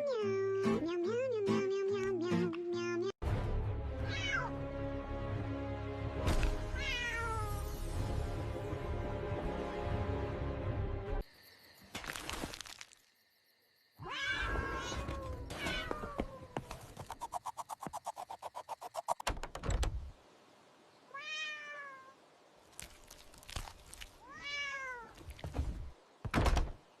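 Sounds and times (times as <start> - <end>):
cat meowing: 4.0 - 4.5, 6.8 - 7.5, 14.0 - 16.6, 21.1 - 22.2, 24.2 - 25.2.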